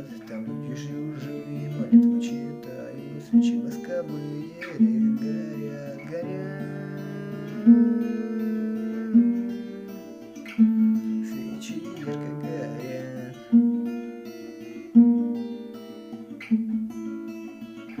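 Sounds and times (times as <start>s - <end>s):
acoustic guitar strumming: 0.0s - 18.0s
picked guitar notes: 0.0s - 18.0s.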